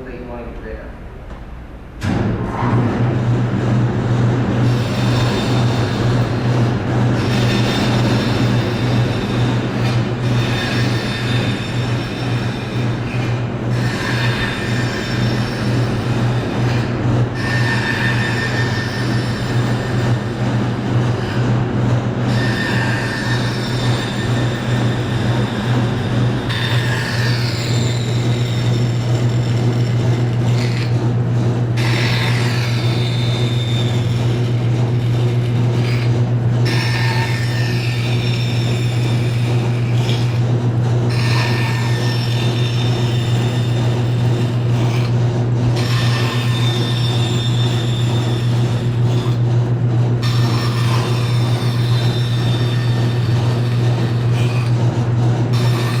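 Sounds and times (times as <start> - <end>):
bandsaw motor hum: 2.0 - 56.0
saw blade cutting wood: 4.6 - 21.6, 22.3 - 40.5, 41.1 - 56.0.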